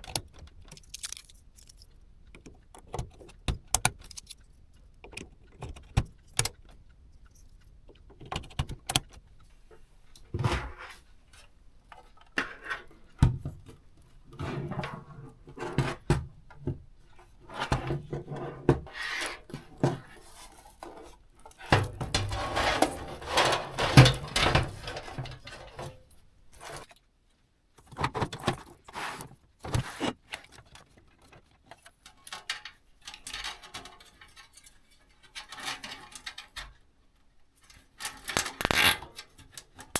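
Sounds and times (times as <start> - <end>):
small metallic clicks and taps: 0.0 - 9.5, 38.1 - 39.7
rustling and scraping: 9.3 - 27.0, 37.7 - 39.2.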